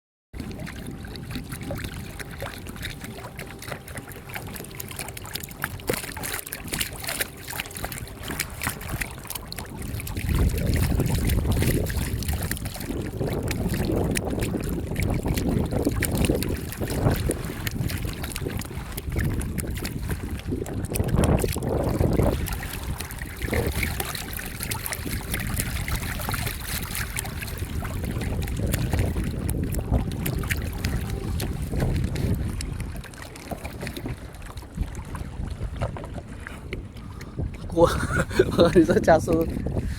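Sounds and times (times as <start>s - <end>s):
rc boat motor on water: 0.3s - 39.9s
wind buffeting microphone: 0.4s - 39.9s.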